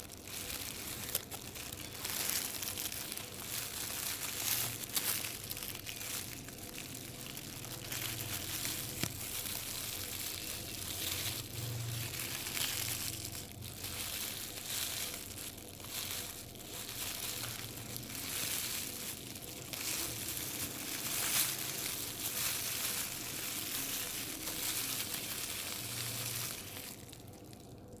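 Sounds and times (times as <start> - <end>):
plastic bag crinkling: 0.0 - 28.0.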